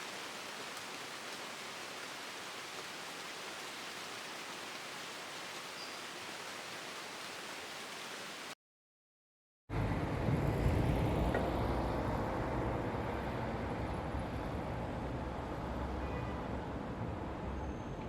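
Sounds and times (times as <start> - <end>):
street traffic rumble: 9.7 - 18.0.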